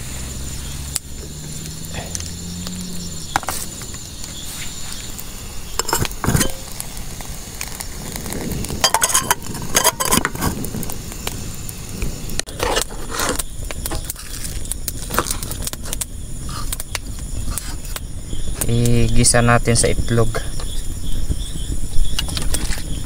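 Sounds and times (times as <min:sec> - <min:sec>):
metal utensils clinking on pan: 0:05.8 - 0:06.8, 0:08.8 - 0:10.6.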